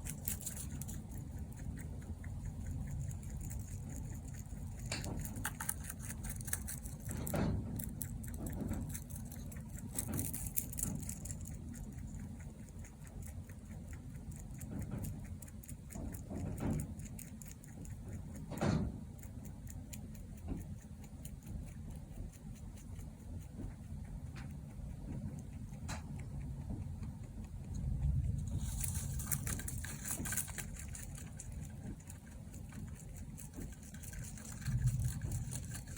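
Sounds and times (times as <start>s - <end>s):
steady low hum: 0.0s - 35.9s
rabbit snoring with soft clicks: 6.7s - 28.6s.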